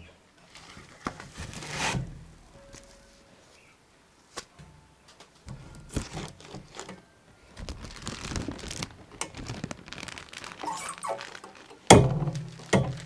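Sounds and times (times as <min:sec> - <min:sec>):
packaging rustling and crinkling: 0:05.5 - 0:13.0.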